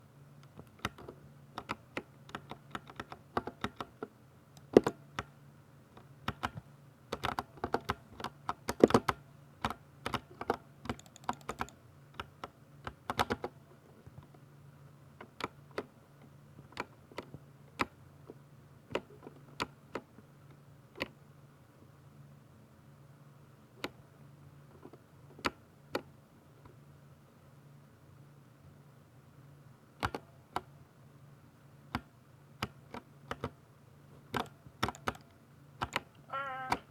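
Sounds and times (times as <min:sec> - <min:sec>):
mechanical keyboard keystroke clacks: 0:00.6 - 0:04.0, 0:04.6 - 0:05.3, 0:06.2 - 0:13.6, 0:34.3 - 0:36.1.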